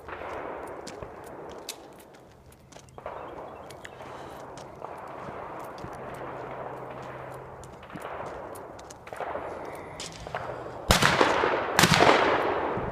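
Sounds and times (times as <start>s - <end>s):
low background noise: 0.0s - 12.9s
loud gunshot: 4.8s - 12.9s.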